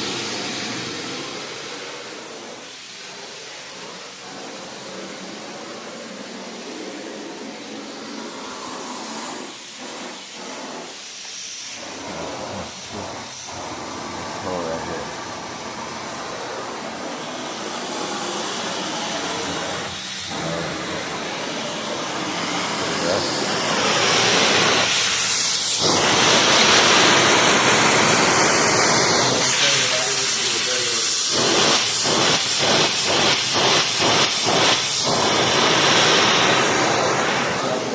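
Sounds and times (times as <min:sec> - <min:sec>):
floor polishing machine hissing: 0:00.0 - 0:37.9.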